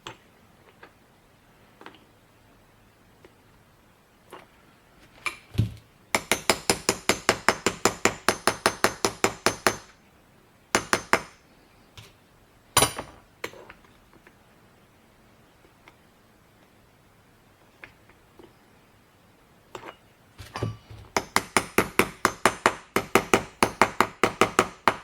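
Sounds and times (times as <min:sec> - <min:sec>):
small hammer tapping metal: 0:06.2 - 0:09.9, 0:10.8 - 0:11.4, 0:19.8 - 0:25.0.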